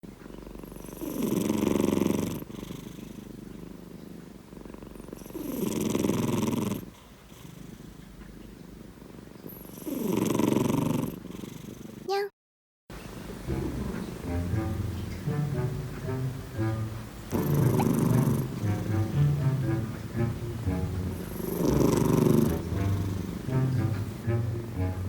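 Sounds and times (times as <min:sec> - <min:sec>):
cat snoring: 0:00.0 - 0:12.1, 0:17.1 - 0:24.4.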